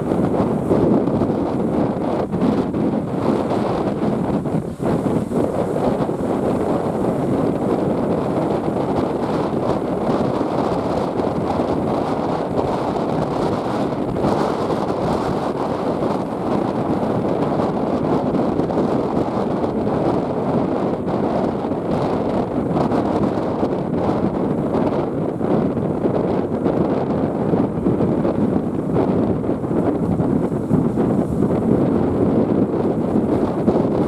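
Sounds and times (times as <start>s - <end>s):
wind buffeting microphone: 0.0s - 34.0s.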